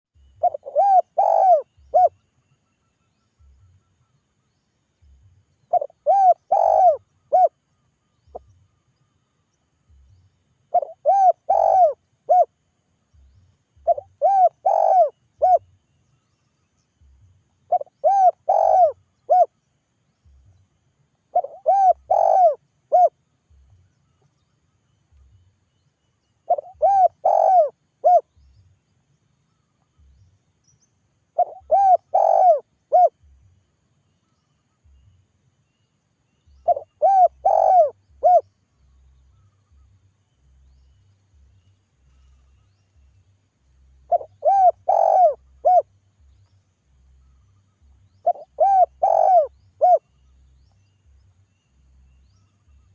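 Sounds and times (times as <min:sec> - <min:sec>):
dove cooing: 0:00.4 - 0:02.2, 0:05.7 - 0:07.5, 0:10.7 - 0:12.5, 0:13.8 - 0:15.6, 0:17.7 - 0:19.5, 0:21.3 - 0:23.2, 0:26.5 - 0:28.3, 0:31.4 - 0:33.2, 0:36.6 - 0:38.4, 0:44.1 - 0:45.9, 0:48.2 - 0:50.0.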